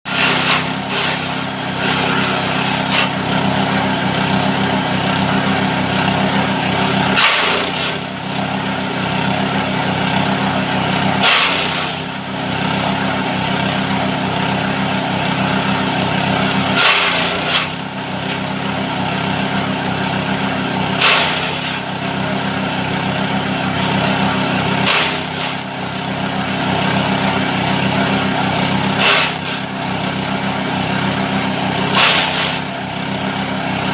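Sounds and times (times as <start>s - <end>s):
harsh chopping bursts: 0.1s - 8.3s, 11.1s - 12.1s, 16.2s - 18.5s, 20.8s - 21.9s, 22.9s - 33.9s
chopper machine engine running: 0.1s - 33.9s.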